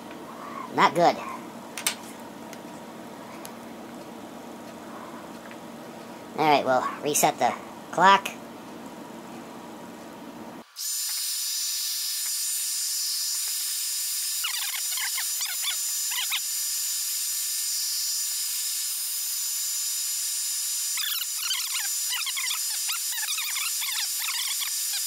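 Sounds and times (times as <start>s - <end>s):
hot-air blower hissing and whining: 7.7s - 14.5s
high wavering squeaks: 21.0s - 25.0s.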